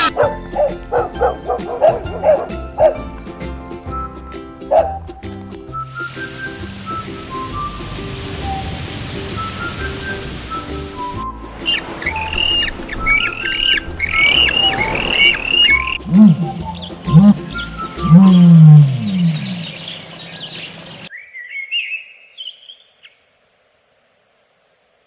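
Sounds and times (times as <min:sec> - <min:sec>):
low rising and falling animal calls: 0:11.6 - 0:21.1
high chirping calls: 0:11.6 - 0:23.2.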